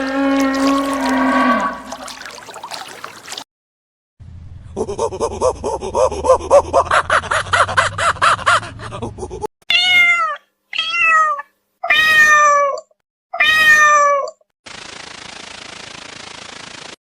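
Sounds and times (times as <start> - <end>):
cat meowing: 9.7 - 14.4.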